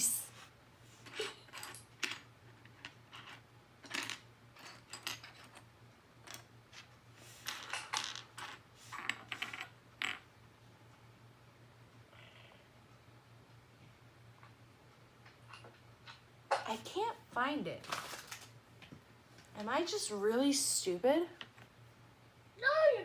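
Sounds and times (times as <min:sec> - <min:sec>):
plastic pieces clattering: 0:17.8 - 0:18.5.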